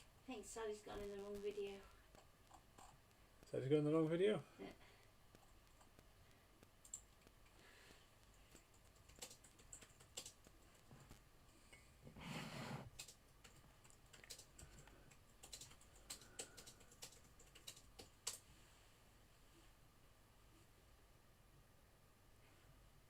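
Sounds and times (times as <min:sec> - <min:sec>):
computer keyboard typing: 0:00.6 - 0:03.6, 0:05.3 - 0:11.2, 0:12.8 - 0:18.4.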